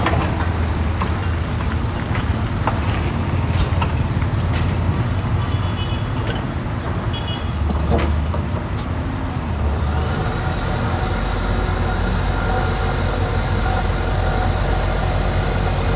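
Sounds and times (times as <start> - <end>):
excavator diesel engine running: 0.0 - 5.4, 6.8 - 15.9.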